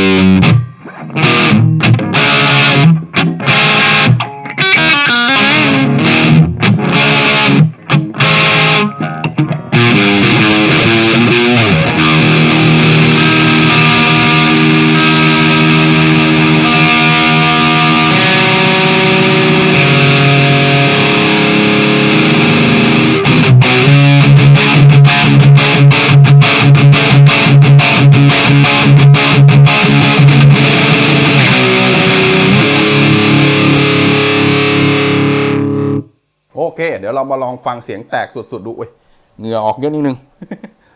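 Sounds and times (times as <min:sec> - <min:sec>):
electric guitar crunch chords: 0:00.0 - 0:36.5.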